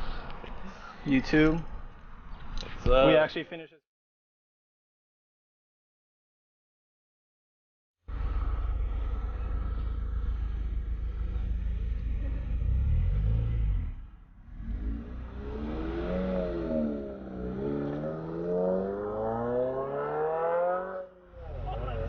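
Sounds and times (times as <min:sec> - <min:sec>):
car engine accelerating: 0:08.1 - 0:22.0.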